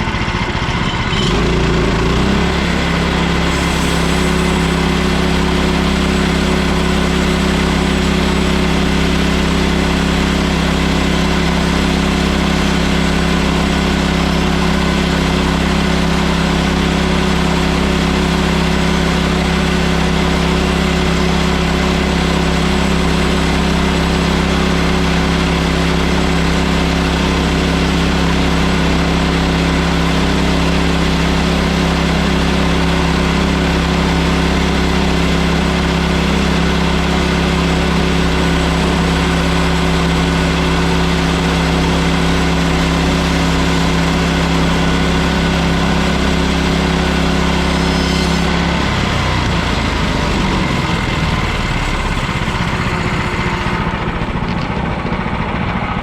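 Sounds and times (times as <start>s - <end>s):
sawmill gasoline engine running: 0.0s - 56.0s.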